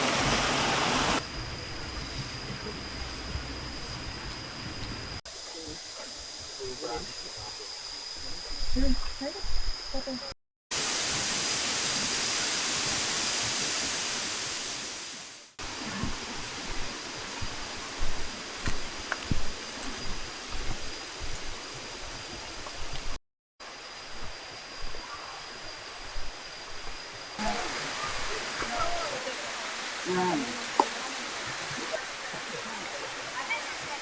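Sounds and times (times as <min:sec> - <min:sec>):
waterfall rushing: 0:00.0 - 0:01.2, 0:10.7 - 0:19.8, 0:27.4 - 0:34.0.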